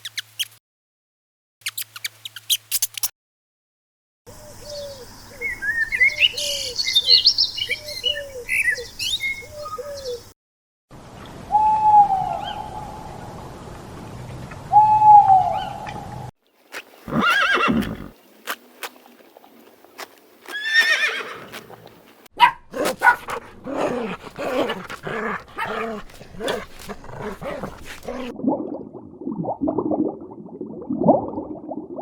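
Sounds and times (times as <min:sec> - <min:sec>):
horse whinnying: 0:17.1 - 0:18.1, 0:20.5 - 0:21.6, 0:22.8 - 0:28.3.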